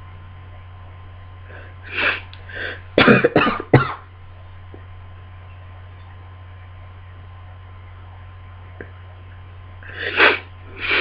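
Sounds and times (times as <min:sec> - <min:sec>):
low electrical hum: 0:00.0 - 0:11.0
person sneezing: 0:09.9 - 0:11.0.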